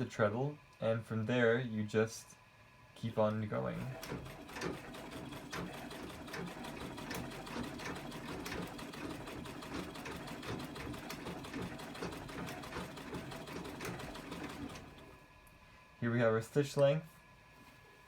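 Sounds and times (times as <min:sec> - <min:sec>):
sewing machine stitching: 0:03.8 - 0:15.1.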